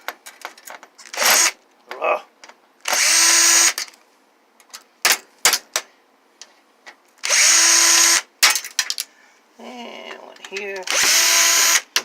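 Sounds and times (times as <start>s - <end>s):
power drill backing out screw: 2.9s - 3.8s, 10.8s - 11.8s.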